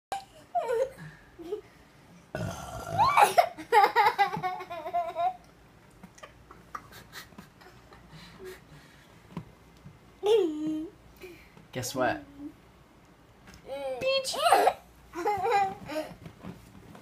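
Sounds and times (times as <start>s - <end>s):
man burping: 2.3s - 3.3s
young child giggling: 3.1s - 5.4s, 14.4s - 16.2s.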